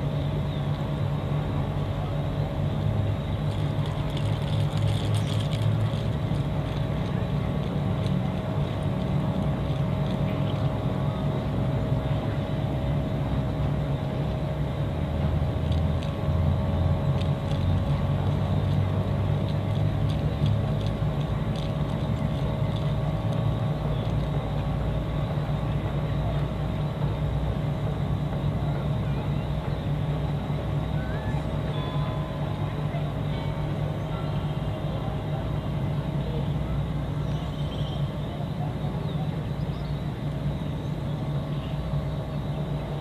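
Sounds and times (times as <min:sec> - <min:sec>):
engine droning: 0:00.0 - 0:43.0
faint high steady tones: 0:22.3 - 0:43.0.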